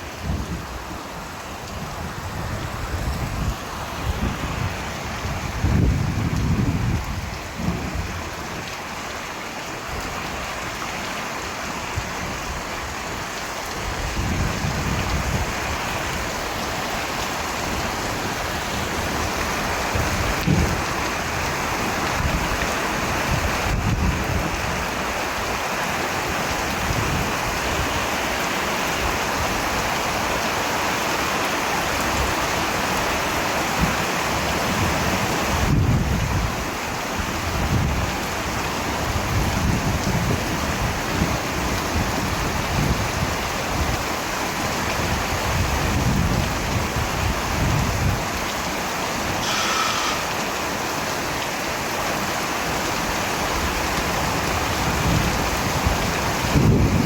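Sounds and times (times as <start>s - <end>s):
steady rain falling: 0.0s - 57.0s
brief high-pitched tone: 49.4s - 50.4s.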